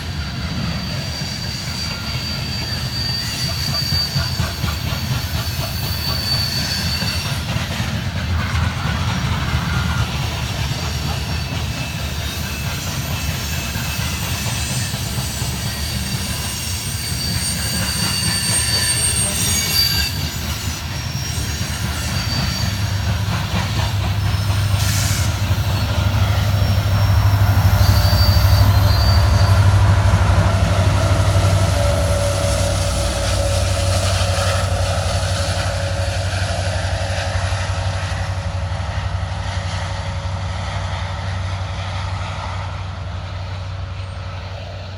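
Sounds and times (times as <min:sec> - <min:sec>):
steel wheels squealing: 0:00.0 - 0:38.6, 0:43.1 - 0:44.9
train cars rolling past: 0:00.0 - 0:44.9
low drone: 0:24.6 - 0:38.8.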